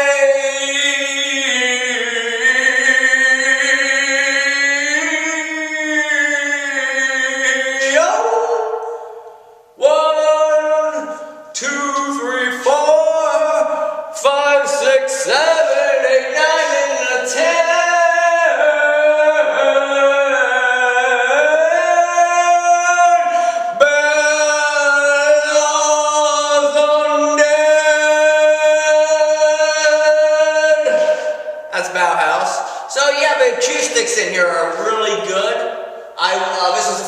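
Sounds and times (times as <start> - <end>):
man singing a cappella: 0.0 - 37.0.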